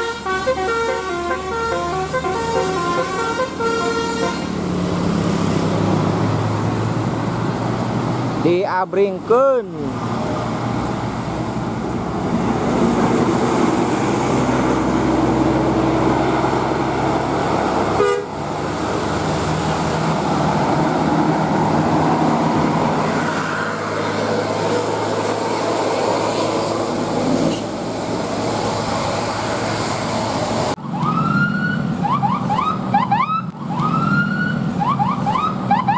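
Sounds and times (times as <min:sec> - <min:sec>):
multi-tone bus horn tune: 0:00.0 - 0:04.6, 0:17.9 - 0:18.4
bus engine running: 0:00.0 - 0:08.5, 0:09.2 - 0:35.9
road noise: 0:00.0 - 0:35.9.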